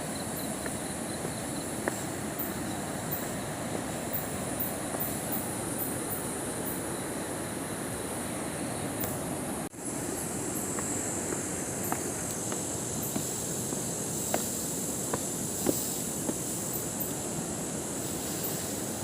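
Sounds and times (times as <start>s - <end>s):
footsteps on a trail: 0.0s - 5.2s, 10.7s - 16.6s
insects buzzing: 0.0s - 19.0s.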